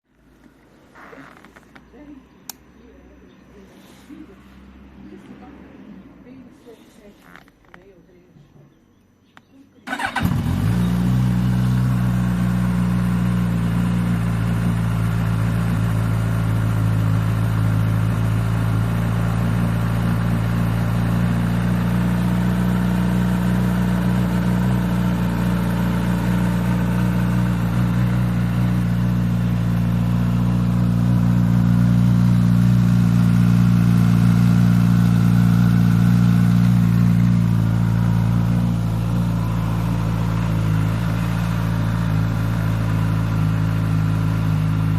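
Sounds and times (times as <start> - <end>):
motorcycle engine starting and idling: 9.4 - 44.9
engine startup rattle: 9.8 - 11.2.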